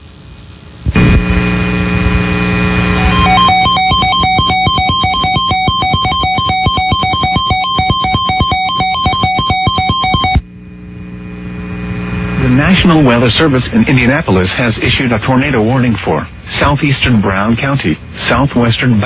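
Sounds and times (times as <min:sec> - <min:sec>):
steady low hum: 0:00.0 - 0:19.0
two-pitch electronic beeping: 0:03.0 - 0:10.4.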